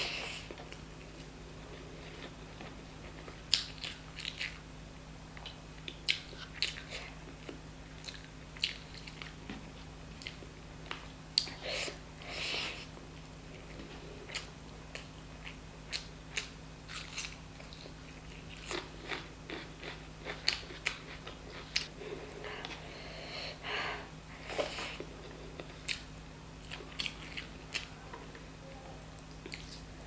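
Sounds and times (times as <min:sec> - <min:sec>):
close chewing: 0:01.8 - 0:04.6, 0:05.4 - 0:09.4, 0:13.6 - 0:22.8, 0:24.6 - 0:28.0.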